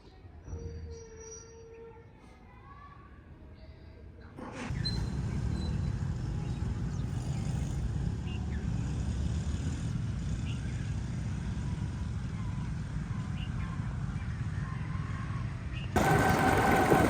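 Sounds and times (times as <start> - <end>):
rumble of traffic: 4.5 - 17.0
voices: 12.6 - 17.0.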